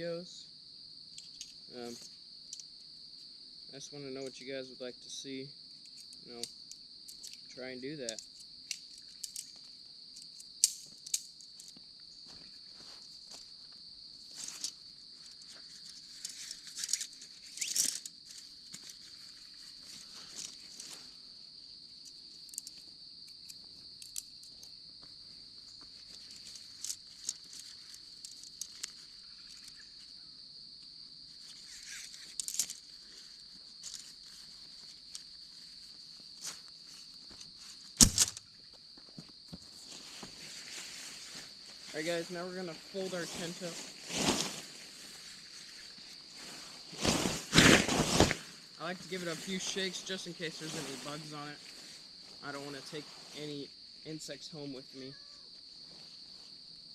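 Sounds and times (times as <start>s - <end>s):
crickets chirping: 0.0s - 56.9s
tent fabric rustling and clicking: 14.3s - 21.1s, 25.9s - 29.8s, 43.0s - 48.6s.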